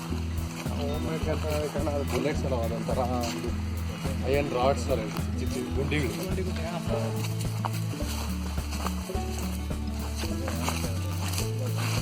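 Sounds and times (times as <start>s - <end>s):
deep bass notes: 0.0s - 12.0s
light percussion: 0.0s - 12.0s.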